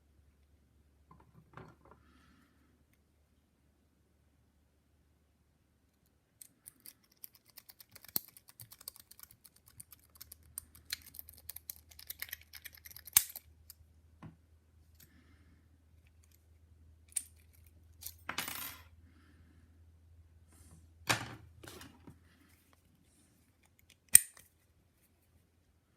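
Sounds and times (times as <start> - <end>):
lock pick metallic clicking: 6.4 - 13.8, 23.7 - 24.5.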